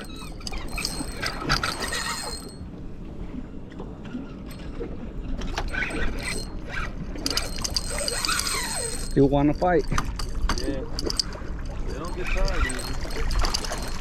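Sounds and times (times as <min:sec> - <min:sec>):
fishing reel clicking and ratcheting: 0:00.0 - 0:02.6, 0:05.6 - 0:14.0.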